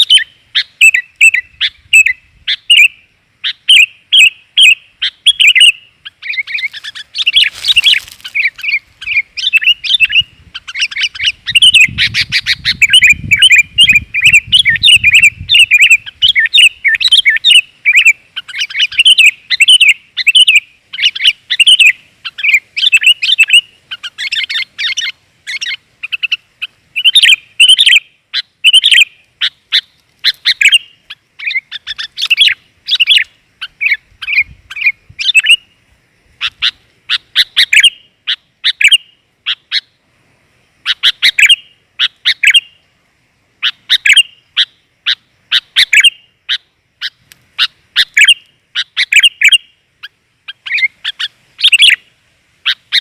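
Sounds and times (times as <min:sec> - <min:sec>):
bulbul chirping: 0:00.0 - 0:35.7.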